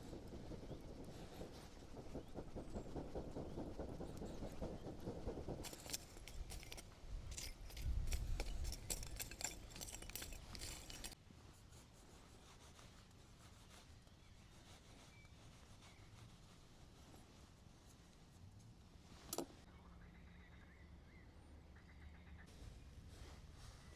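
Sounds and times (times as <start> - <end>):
faint steady background: 0.0 - 23.9
small objects clicking and scraping: 4.0 - 11.2.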